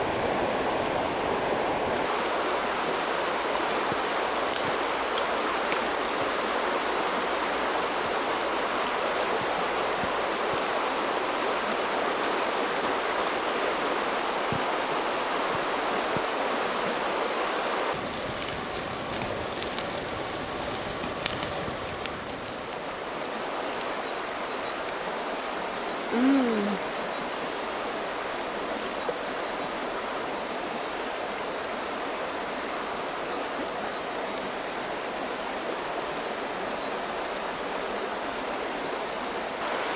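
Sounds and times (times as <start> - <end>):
river water flowing: 0.0 - 39.9
faint ticks: 18.0 - 23.2.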